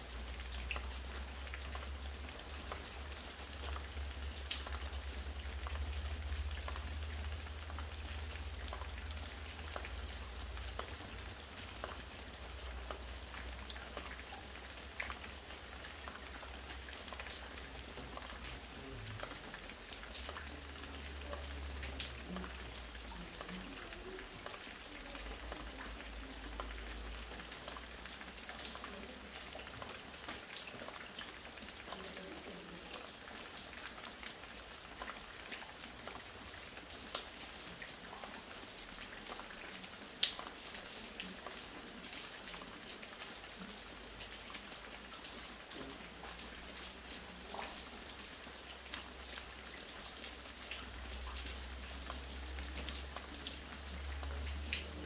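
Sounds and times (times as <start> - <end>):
fine rain falling: 0.0 - 55.0
roof drips ticking: 0.0 - 55.0.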